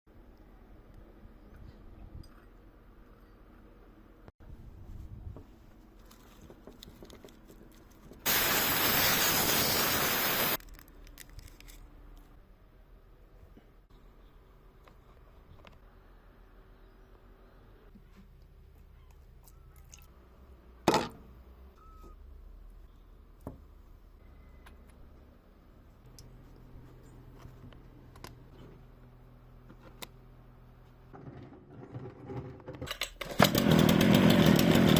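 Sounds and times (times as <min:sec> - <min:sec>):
hissing spray: 0:08.3 - 0:10.6
small clicks and handling noises: 0:10.6 - 0:12.4, 0:26.0 - 0:28.8
chainsaw engine running: 0:33.3 - 0:34.9.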